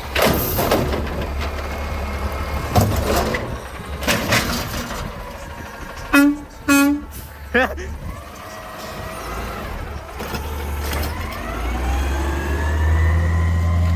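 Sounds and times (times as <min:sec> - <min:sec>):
clattering bursts: 0:00.0 - 0:07.3
garbage truck diesel engine rumbling: 0:00.0 - 0:13.9.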